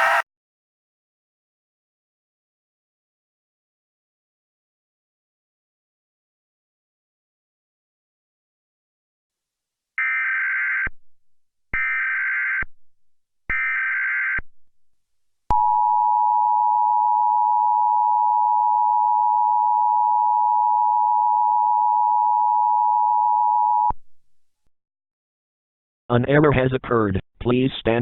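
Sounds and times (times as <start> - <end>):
steady attention tone: 0.0 - 0.2.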